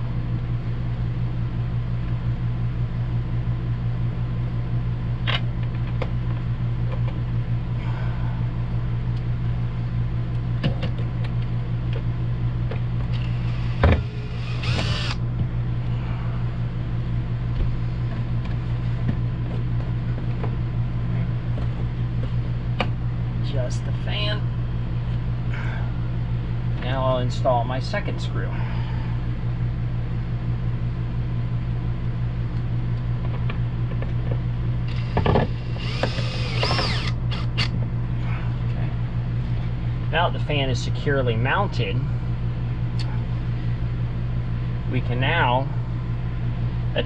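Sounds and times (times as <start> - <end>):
low mechanical hum: 0.0 - 47.0.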